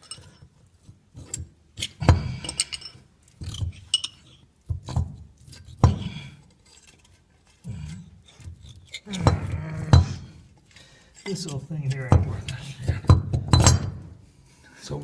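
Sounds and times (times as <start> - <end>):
metal tool knocking in a safe: 12.1 - 14.0.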